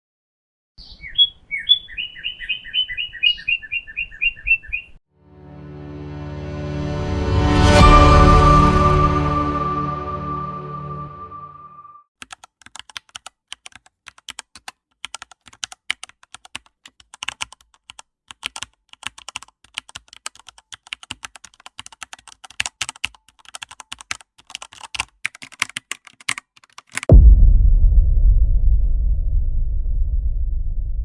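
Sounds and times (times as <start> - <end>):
typing on computer keyboard: 12.2 - 27.1.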